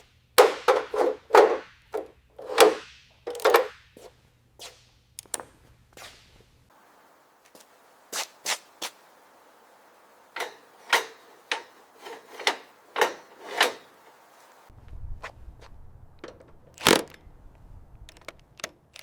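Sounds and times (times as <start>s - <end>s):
hand tool scraping and knocking: 0.4s - 3.7s, 10.4s - 13.9s.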